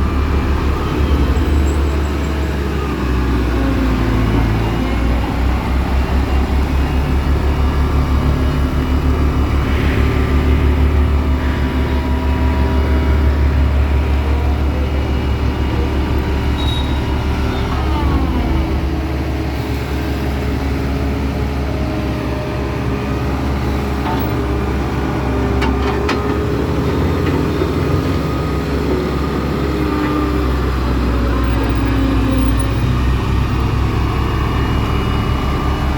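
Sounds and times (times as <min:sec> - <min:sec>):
deep pulsing rumble: 0:00.0 - 0:23.0
diesel construction machinery running: 0:00.0 - 0:35.9.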